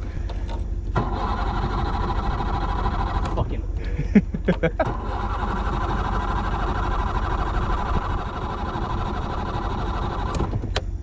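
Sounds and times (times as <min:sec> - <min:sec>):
outboard motor running unevenly: 0:00.0 - 0:10.8.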